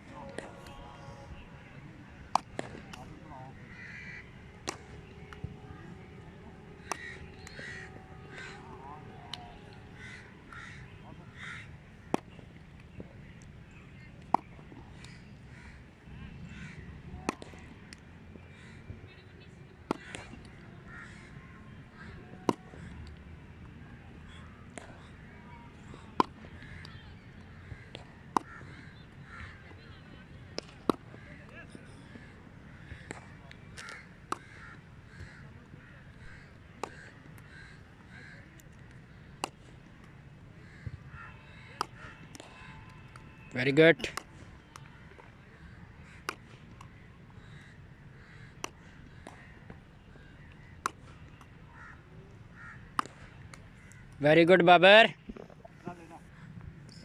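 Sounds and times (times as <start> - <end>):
cricket bat striking ball: 4.6 - 5.6.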